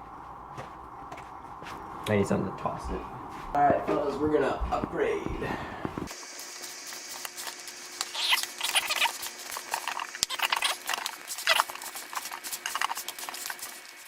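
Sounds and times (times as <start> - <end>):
wet potato mixture squishing: 7.4 - 13.8.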